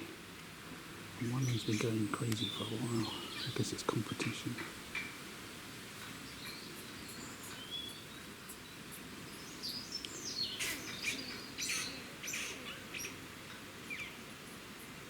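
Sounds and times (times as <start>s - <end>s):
outdoor hiss: 0.0s - 15.0s
birdsong: 1.1s - 5.2s, 6.0s - 15.0s
squirrels squeaking and chirping: 9.6s - 13.2s.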